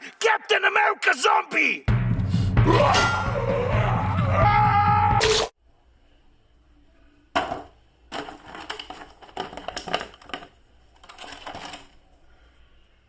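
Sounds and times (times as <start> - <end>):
plastic packaging crinkling: 8.2 - 12.1.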